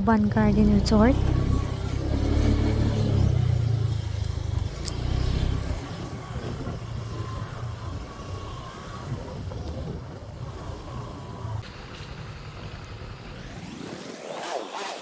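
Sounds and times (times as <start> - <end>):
traffic noise: 0.0 - 13.7
vehicle engine revving: 0.2 - 13.8.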